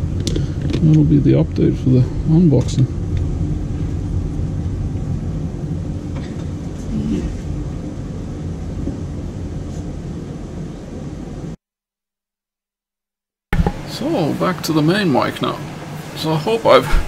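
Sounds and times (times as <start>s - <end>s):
low background rumble: 0.0s - 11.6s.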